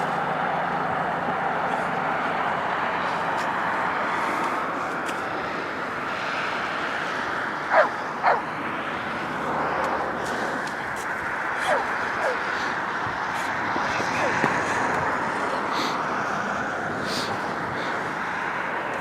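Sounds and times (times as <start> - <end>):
steady noisy background: 0.0 - 19.0
dog yelping: 7.7 - 8.5, 11.6 - 12.5, 14.2 - 14.4.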